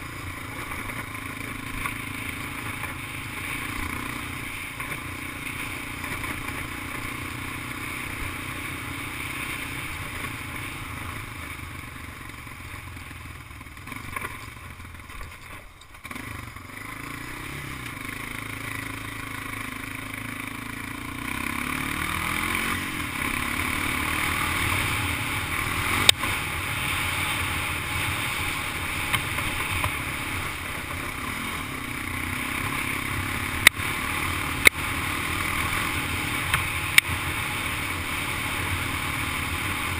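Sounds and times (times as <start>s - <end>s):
atv engine running: 0.0s - 39.9s.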